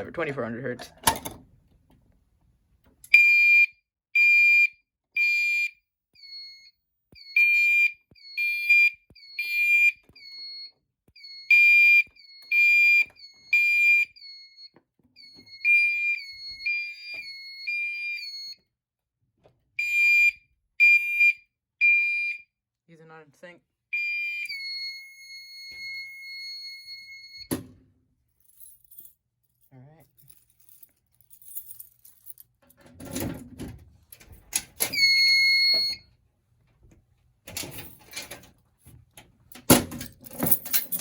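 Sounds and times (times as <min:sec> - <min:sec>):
fire alarm horn beeps: 0:03.1 - 0:18.6, 0:19.8 - 0:22.6, 0:23.9 - 0:27.5, 0:34.8 - 0:36.1.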